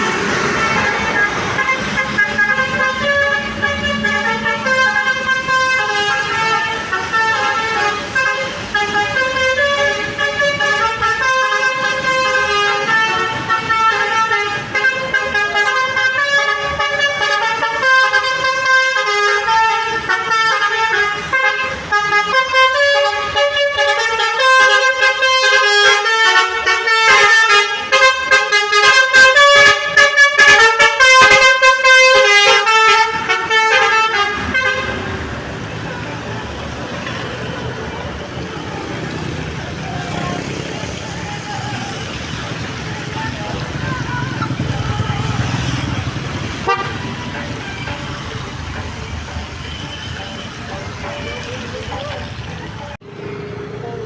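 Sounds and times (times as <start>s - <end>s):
bus air horn playing a tune: 0.0s - 35.3s, 43.5s - 48.1s.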